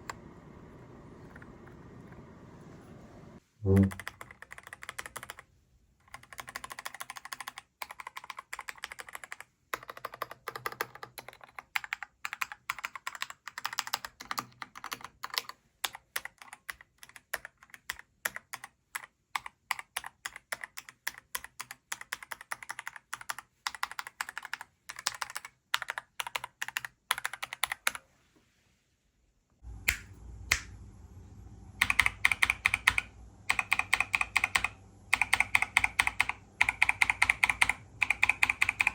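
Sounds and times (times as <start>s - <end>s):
low hum: 0.0s - 4.0s
mechanical keyboard typing: 3.7s - 5.4s, 6.0s - 28.0s, 31.8s - 38.9s.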